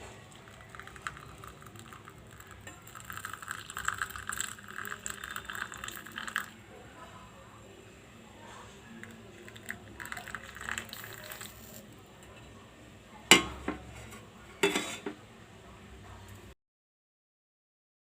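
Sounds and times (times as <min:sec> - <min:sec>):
dishes scraping and clinking: 0:10.4 - 0:12.6, 0:13.3 - 0:15.2
sharp clanks of dishes: 0:13.3 - 0:15.2.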